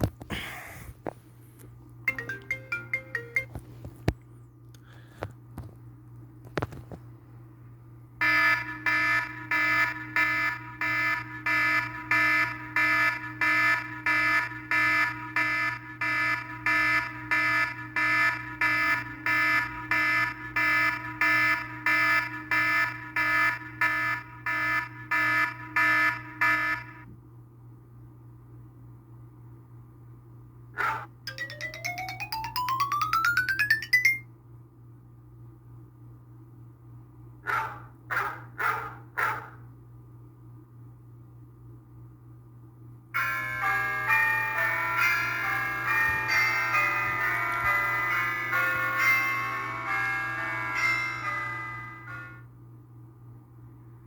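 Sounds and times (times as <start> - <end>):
quick notes: 2.1 - 3.6, 31.3 - 34.2.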